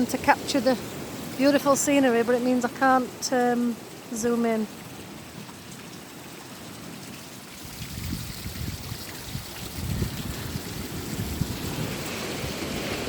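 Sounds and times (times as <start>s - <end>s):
water rushing: 0.0s - 13.0s
wind buffeting microphone: 7.6s - 13.0s.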